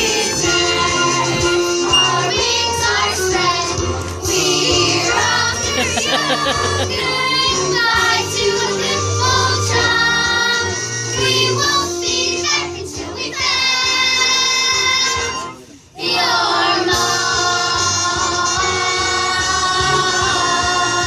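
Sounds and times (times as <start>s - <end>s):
cast singing with accompaniment: 0.0s - 21.0s.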